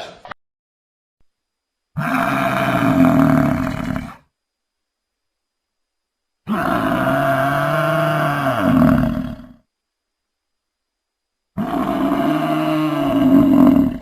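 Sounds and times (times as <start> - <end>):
large animal roaring: 2.0 - 4.2, 6.5 - 9.6, 11.6 - 14.0.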